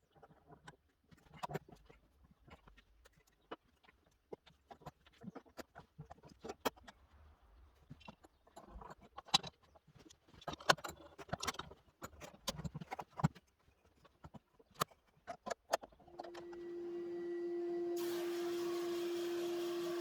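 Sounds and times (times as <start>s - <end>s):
tools and wood clicking: 8.4s - 16.6s
electric machine humming: 16.1s - 20.0s.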